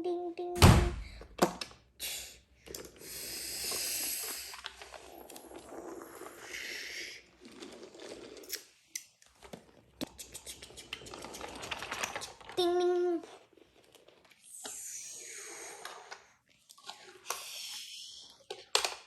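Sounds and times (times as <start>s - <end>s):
rustling: 9.4s - 14.4s
plastic toy clicks and rattles: 10.6s - 12.9s, 18.5s - 19.0s.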